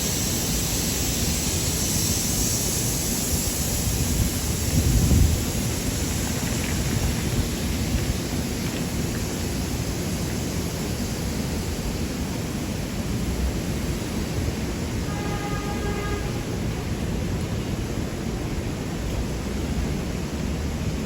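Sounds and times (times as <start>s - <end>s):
traffic rumble: 0.0s - 21.0s.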